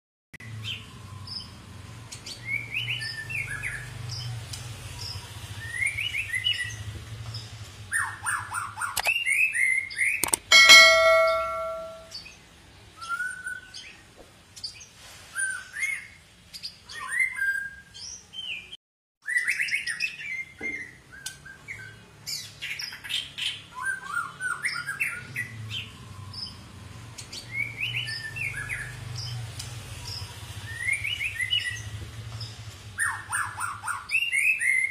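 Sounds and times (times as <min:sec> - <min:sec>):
loud ringing clang: 0:10.2 - 0:12.1
songbird whistling and chirping: 0:13.0 - 0:14.0, 0:16.9 - 0:26.6, 0:27.2 - 0:28.9, 0:33.0 - 0:34.9.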